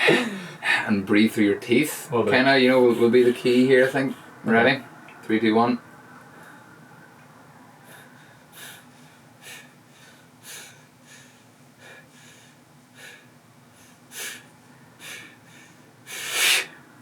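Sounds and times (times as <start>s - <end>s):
man breathing hard through teeth: 7.8s - 16.8s.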